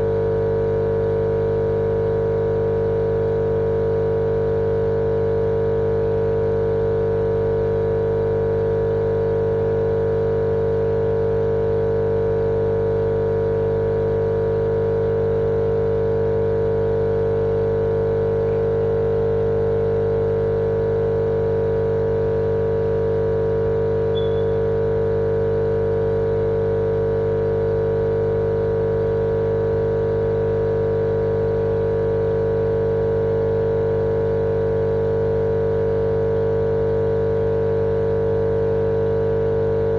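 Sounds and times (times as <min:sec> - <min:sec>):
machine hum: 0:18.4 - 0:19.1, 0:22.7 - 0:26.0.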